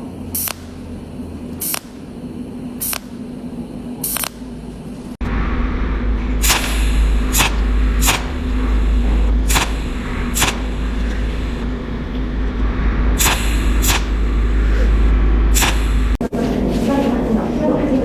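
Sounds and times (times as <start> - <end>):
low electrical hum: 0.0 - 18.0
welding machine snaps: 0.4 - 0.7, 1.6 - 2.0, 2.8 - 3.2, 4.0 - 4.4, 6.4 - 6.8, 7.4 - 8.3, 9.5 - 9.8, 10.4 - 10.8, 13.2 - 14.1, 15.6 - 15.9.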